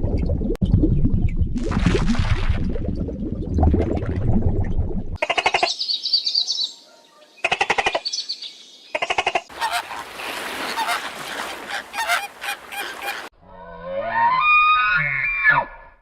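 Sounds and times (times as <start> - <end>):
waterfowl honking: 9.0 - 13.3
flock of birds calling: 9.5 - 13.3.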